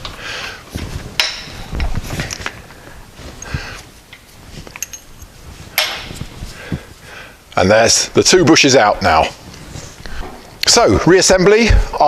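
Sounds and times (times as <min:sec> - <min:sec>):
metal parts and tools clinking: 0:04.1 - 0:06.3.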